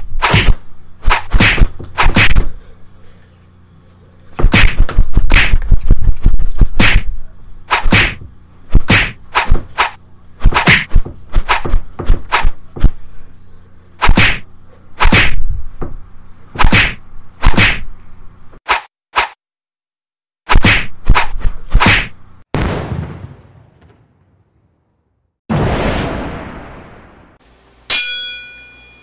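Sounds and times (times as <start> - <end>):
punch and whack hits: 0.2 - 2.5, 4.4 - 5.6, 6.6 - 7.1, 7.7 - 12.9, 14.0 - 15.4, 16.6 - 17.8, 20.5 - 22.2.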